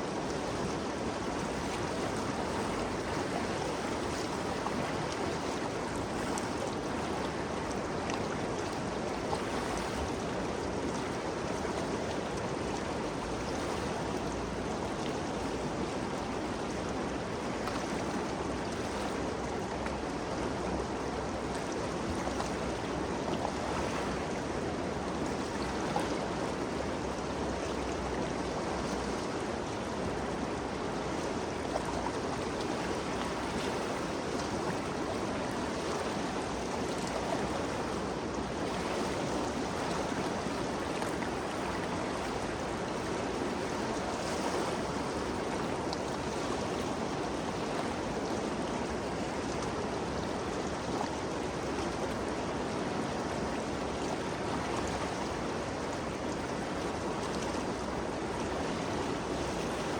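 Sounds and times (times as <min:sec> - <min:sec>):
river water rushing: 0:00.0 - 0:59.9.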